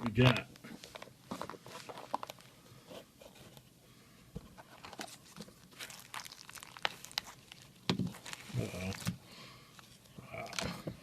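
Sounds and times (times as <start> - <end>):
packing material rustling: 0.2 - 2.6, 4.6 - 10.7.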